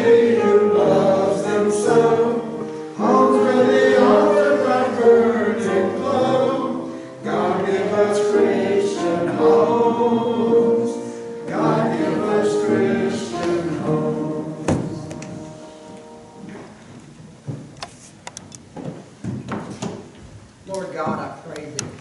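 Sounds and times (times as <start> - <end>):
congregation singing a hymn: 0.0 - 16.4.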